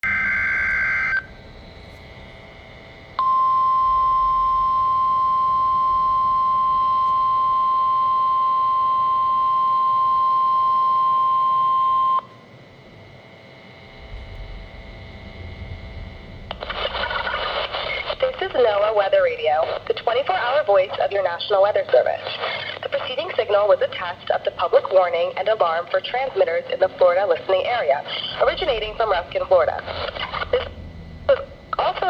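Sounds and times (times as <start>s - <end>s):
steady high alarm tone: 0.0s - 21.8s, 27.5s - 32.0s
faint radio hiss: 13.4s - 32.0s
warbling data burst: 13.6s - 21.3s.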